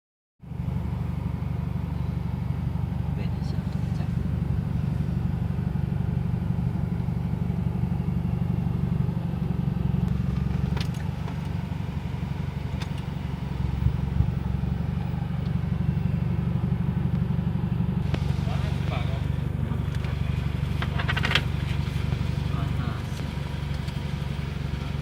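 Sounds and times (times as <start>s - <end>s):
car engine and road noise: 0.4s - 25.0s.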